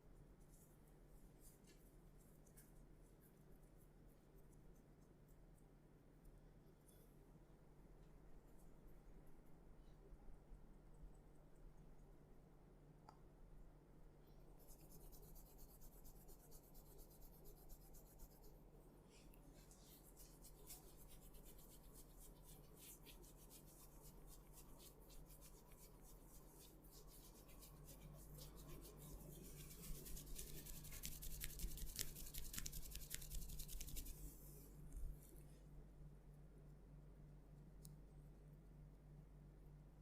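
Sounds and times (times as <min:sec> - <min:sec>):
hands rubbing hair and skin: 0:14.6 - 0:35.3.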